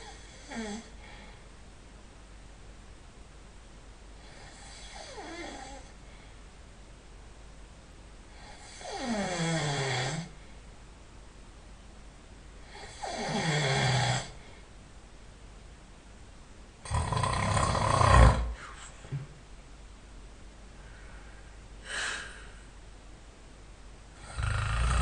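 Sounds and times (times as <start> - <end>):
man snoring: 0.0 - 0.9, 4.3 - 5.8, 8.5 - 10.3, 12.7 - 14.4, 16.8 - 18.7, 24.2 - 25.0.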